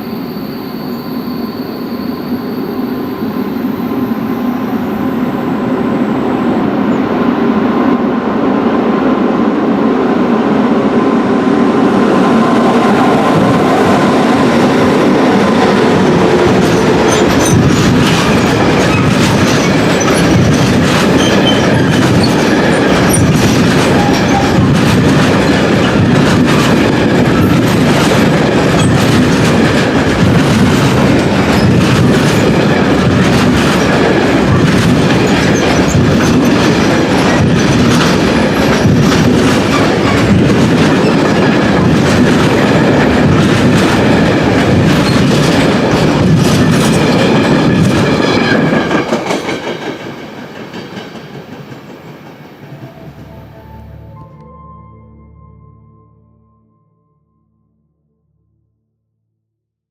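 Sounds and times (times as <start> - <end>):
freight train wheels clattering: 12.6 - 53.4
high wheel squeaks: 16.6 - 24.7.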